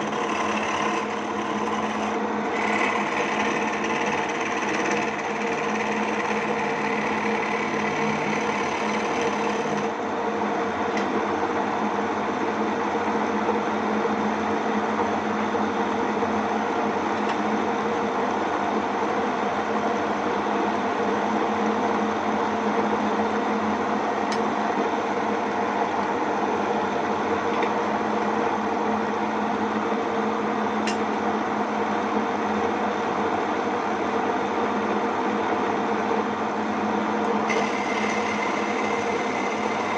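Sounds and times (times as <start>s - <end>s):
electric motor humming: 0.0s - 10.0s, 37.5s - 39.9s.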